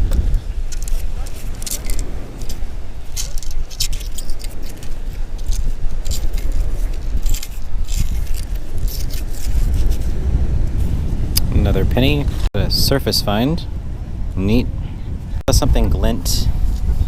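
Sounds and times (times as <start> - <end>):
wind buffeting microphone: 0.0 - 17.0.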